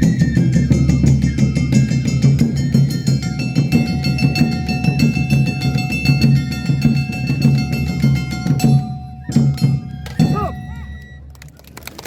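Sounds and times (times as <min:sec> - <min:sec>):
drums beating fast: 0:00.0 - 0:11.0
metal hand gong clanging: 0:03.3 - 0:10.8
flute holding high note: 0:08.8 - 0:11.3.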